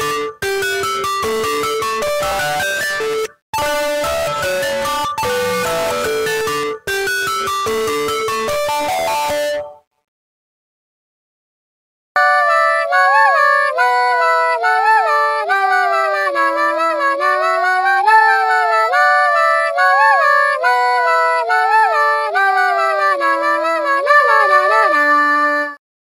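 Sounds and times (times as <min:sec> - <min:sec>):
phone alarm ringtone melody: 0:00.0 - 0:09.8, 0:21.6 - 0:25.3.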